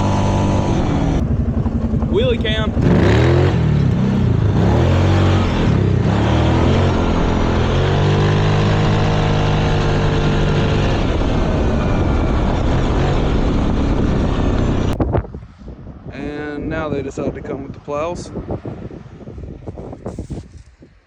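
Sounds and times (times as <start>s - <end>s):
engine revving: 0.0s - 15.0s.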